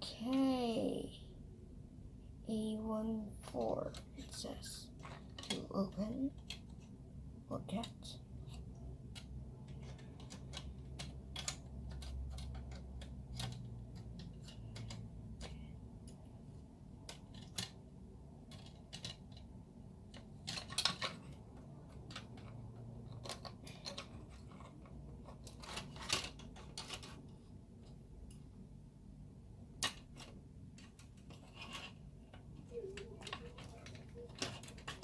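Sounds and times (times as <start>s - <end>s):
plastic part being handled: 29.7s - 35.0s.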